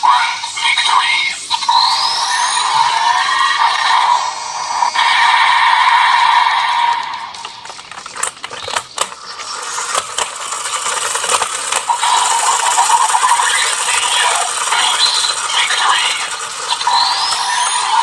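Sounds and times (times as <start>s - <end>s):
hissing electronic toy effect: 0.0s - 18.0s
plastic toy clicks and ratcheting: 7.4s - 18.0s.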